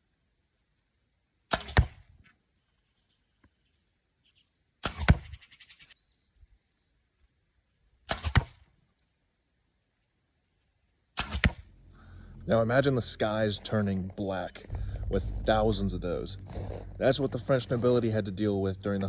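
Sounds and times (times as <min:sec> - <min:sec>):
arrow whooshing and hitting target: 0:11.2 - 0:11.7.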